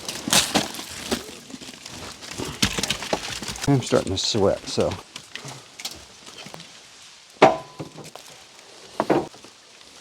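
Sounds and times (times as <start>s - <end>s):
firewood chunks knocking: 2.3s - 3.8s, 7.4s - 8.2s.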